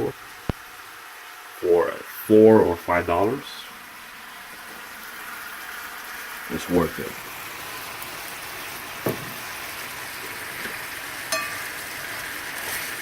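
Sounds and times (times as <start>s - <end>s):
steak sizzling in a pan: 3.8s - 13.0s
knock: 9.0s - 9.4s
metallic clink: 11.3s - 11.7s.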